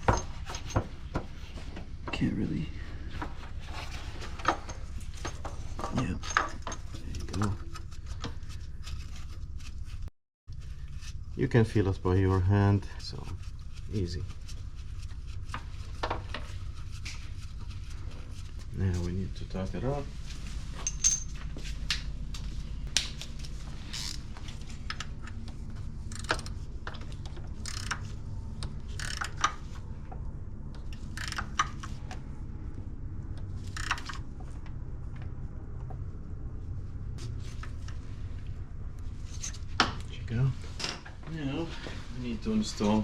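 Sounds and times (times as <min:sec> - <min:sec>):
steady low hum: 0:00.0 - 0:43.0
ratchet wrench clicking: 0:27.6 - 0:28.0, 0:28.9 - 0:29.6, 0:31.0 - 0:31.8, 0:33.8 - 0:34.2.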